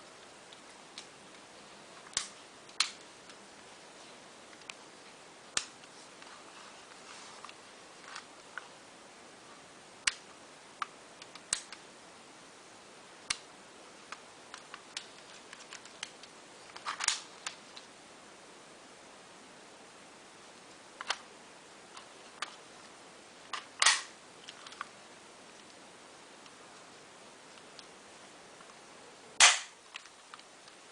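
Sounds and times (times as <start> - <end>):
airsoft pistol mechanical clicks: 23.8 - 24.1.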